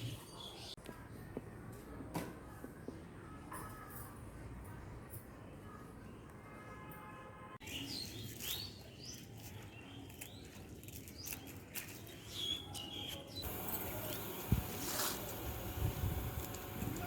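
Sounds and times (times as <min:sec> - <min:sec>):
small birds chirping: 0:07.6 - 0:17.0.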